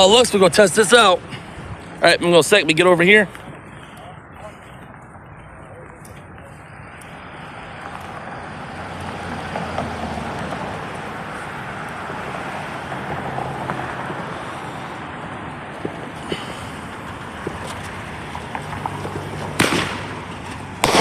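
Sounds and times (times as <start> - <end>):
road traffic: 0.0 - 21.0
short sharp pops: 19.6 - 20.2.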